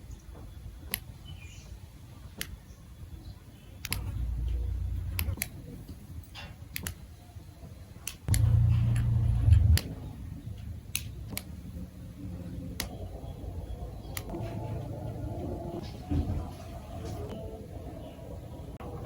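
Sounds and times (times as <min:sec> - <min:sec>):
low rumble: 0:03.9 - 0:05.4, 0:08.3 - 0:10.7, 0:12.0 - 0:16.6.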